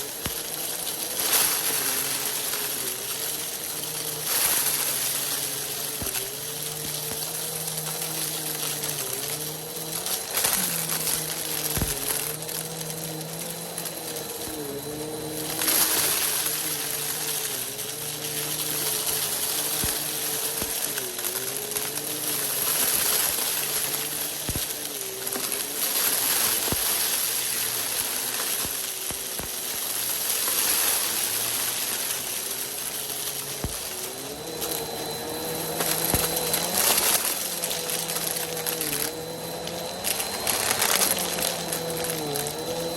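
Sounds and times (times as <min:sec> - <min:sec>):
dry food rattling in vacuum: 0:00.0 - 0:42.9
vacuum cleaner motor running: 0:00.0 - 0:42.9.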